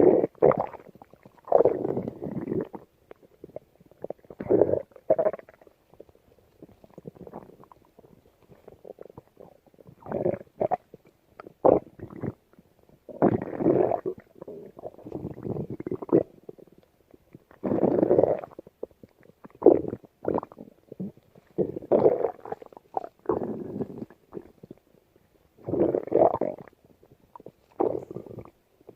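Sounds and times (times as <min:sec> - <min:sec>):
stomach rumbling and gurgling: 0:00.0 - 0:28.9.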